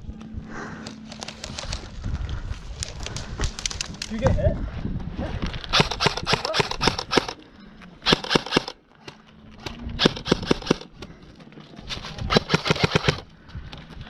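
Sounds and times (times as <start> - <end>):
airsoft guns firing bursts: 5.7 - 7.4, 8.0 - 8.8, 10.0 - 10.9, 11.9 - 13.2.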